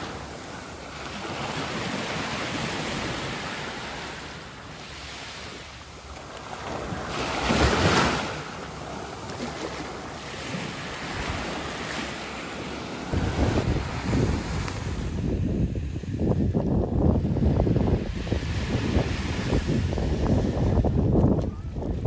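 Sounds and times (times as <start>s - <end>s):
ocean surf washing ashore: 0.0s - 22.0s
wind buffeting microphone: 10.4s - 12.0s, 12.6s - 22.0s.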